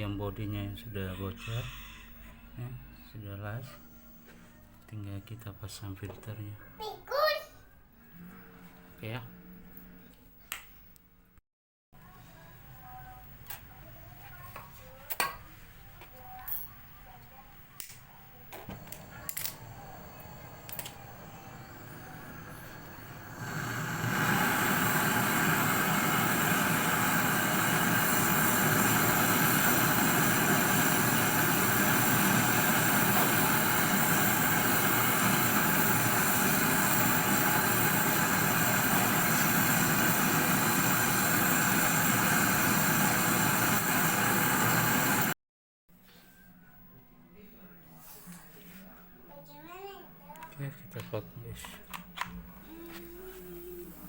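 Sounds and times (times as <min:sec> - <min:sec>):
igniter clicks: 0:18.6 - 0:19.9, 0:20.6 - 0:21.1
torch flame hissing: 0:18.7 - 0:45.4.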